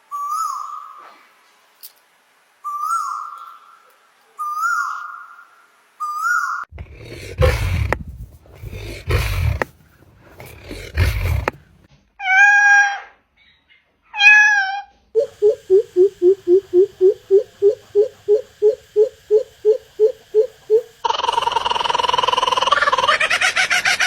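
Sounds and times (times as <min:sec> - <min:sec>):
cat-like mewing bird calls: 0:06.8 - 0:11.7
rough bird call: 0:06.8 - 0:11.9, 0:15.2 - 0:21.4
short pulsed bird notes: 0:15.2 - 0:21.0.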